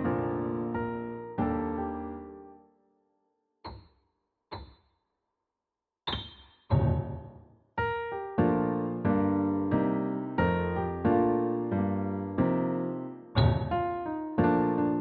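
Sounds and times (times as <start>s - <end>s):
keyboard piano chords: 0.0s - 2.7s, 6.1s - 15.0s.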